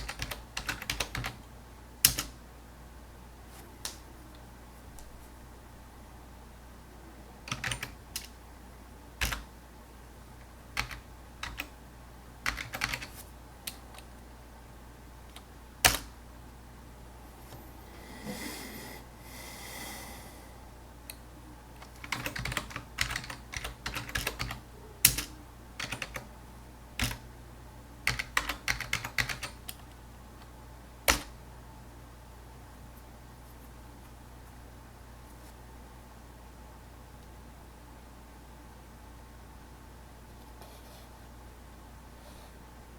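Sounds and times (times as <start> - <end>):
computer keyboard typing: 0.0 - 1.4, 2.0 - 2.4, 7.5 - 8.3, 9.2 - 9.5, 10.8 - 11.7, 12.4 - 14.1, 15.3 - 16.1, 21.8 - 26.3, 27.0 - 27.2, 28.0 - 29.8, 31.1 - 31.3.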